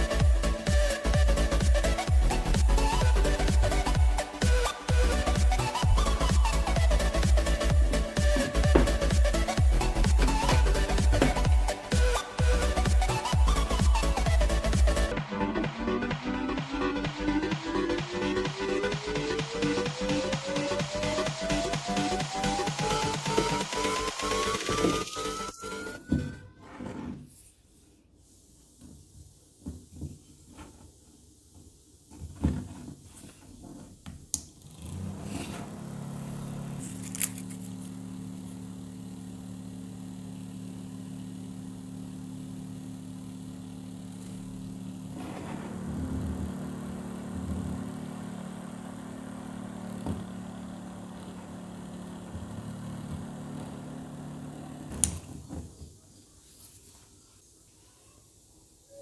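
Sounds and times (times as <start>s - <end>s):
small fan motor humming: 0.0s - 15.1s, 17.2s - 26.4s, 33.7s - 56.5s.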